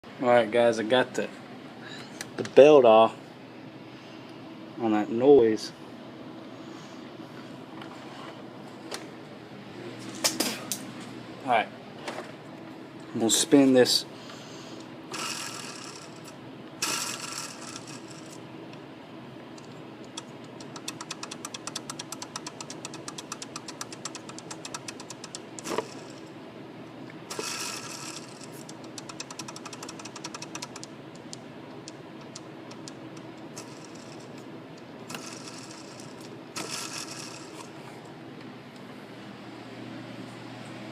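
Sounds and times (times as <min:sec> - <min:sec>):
steady mechanical hum: 0:00.0 - 0:40.9
pulley bearing rattling: 0:15.2 - 0:18.4, 0:20.2 - 0:26.2, 0:27.3 - 0:31.3, 0:32.2 - 0:34.4, 0:35.1 - 0:37.7.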